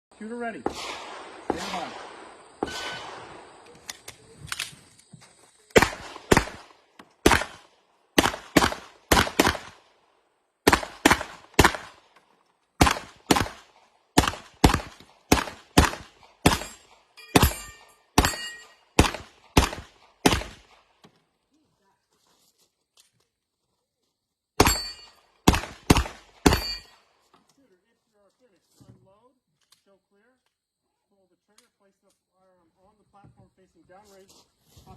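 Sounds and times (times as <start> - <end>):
gunshots: 0.6 - 3.8, 5.7 - 9.9, 10.6 - 12.1, 12.8 - 20.9, 24.6 - 26.9
metallic ringing: 16.6 - 18.9, 24.6 - 25.2.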